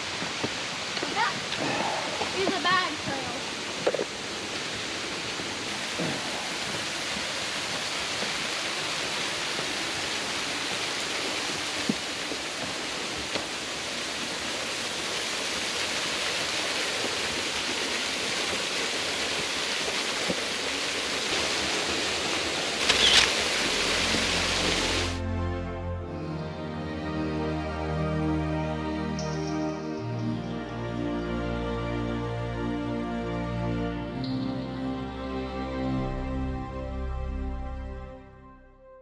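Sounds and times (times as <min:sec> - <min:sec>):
waterfall rushing water: 0:00.0 - 0:25.2.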